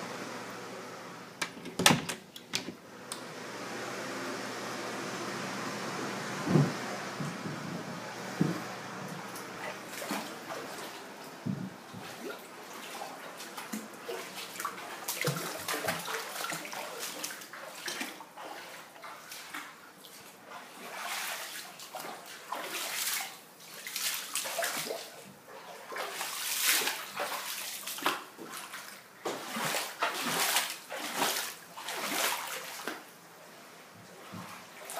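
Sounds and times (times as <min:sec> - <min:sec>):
floodwater splashing and sloshing: 0:06.5 - 0:33.2, 0:34.0 - 0:34.9.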